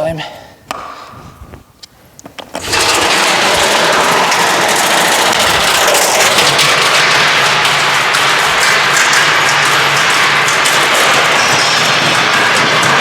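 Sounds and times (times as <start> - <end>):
washing machine tub rattling: 2.6 - 13.0.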